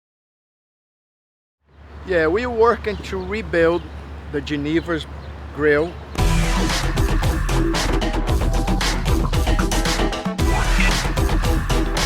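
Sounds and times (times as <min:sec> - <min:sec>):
electronic music with driving beat: 0:06.2 - 0:12.0.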